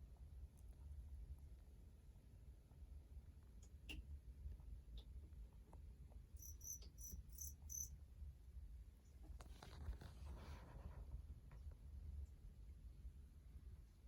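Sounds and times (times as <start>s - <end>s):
cricket chirping: 6.4s - 8.0s
soft rustling and scraping: 9.2s - 11.8s.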